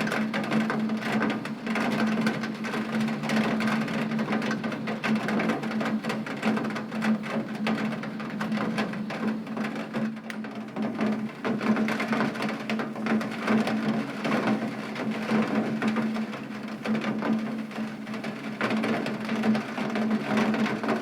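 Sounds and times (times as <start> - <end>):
rain on a tin roof: 0.0 - 21.0.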